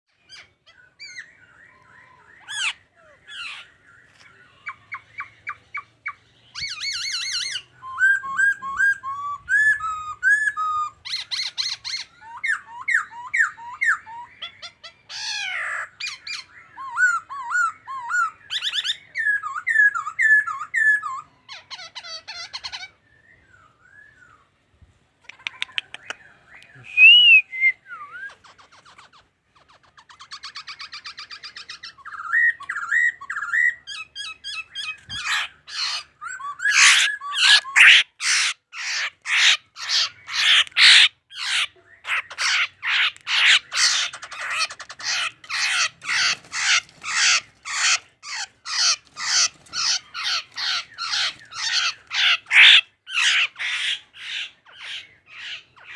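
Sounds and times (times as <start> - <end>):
songbird singing whistled notes: 0.1 - 15.1, 15.7 - 21.6, 22.3 - 38.2.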